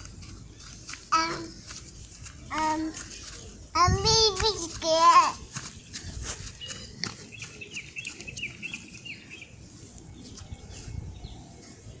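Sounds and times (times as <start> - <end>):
bird chirping: 5.6 - 12.0.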